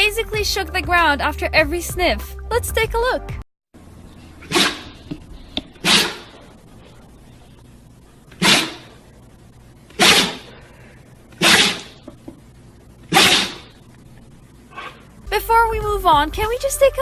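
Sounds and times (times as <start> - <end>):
dog sneezing: 4.5 - 4.9, 5.8 - 6.3, 8.4 - 8.9, 10.0 - 10.5, 11.4 - 11.9, 13.1 - 13.7.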